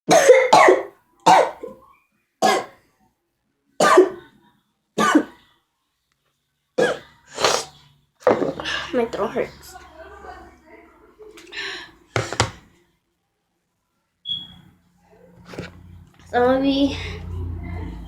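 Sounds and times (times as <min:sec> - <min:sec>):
person coughing: 0:00.1 - 0:01.7, 0:02.4 - 0:02.8, 0:03.8 - 0:04.2, 0:05.0 - 0:05.4, 0:06.8 - 0:07.1.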